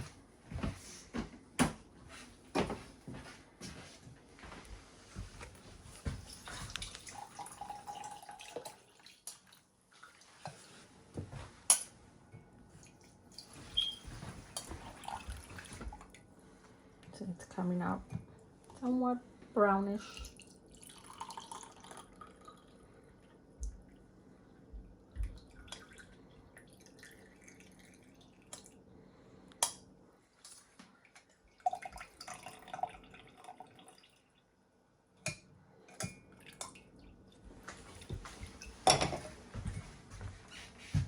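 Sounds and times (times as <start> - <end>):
liquid trickling and dripping: 5.9 - 10.6, 12.8 - 16.3, 20.0 - 22.8, 25.1 - 28.8, 30.4 - 34.5, 35.9 - 38.3.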